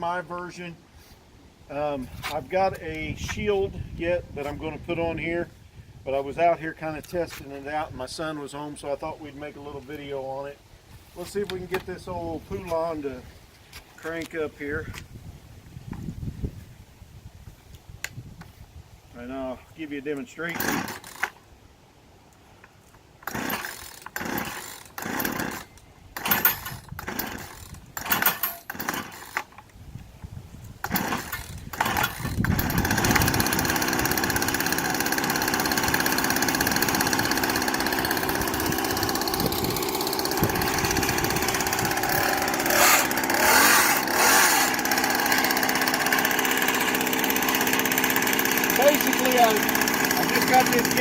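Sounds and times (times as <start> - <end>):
chainsaw engine running: 20.4 - 21.4, 23.2 - 29.6, 30.8 - 51.0
starter cord pulls: 20.5 - 21.4, 23.2 - 29.8, 30.8 - 51.0.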